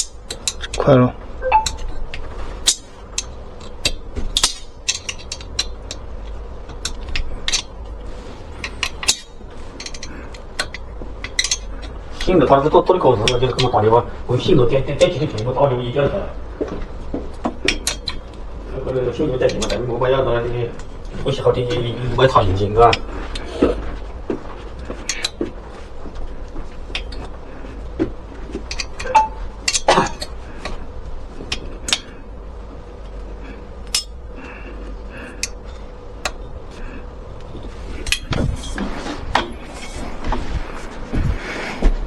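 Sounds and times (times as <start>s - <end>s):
steady low hum: 0.0s - 42.0s.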